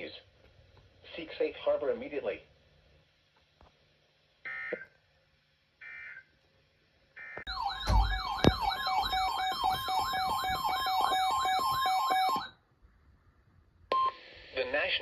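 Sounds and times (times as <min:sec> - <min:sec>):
electronic warbling alert siren: 0:07.2 - 0:12.6.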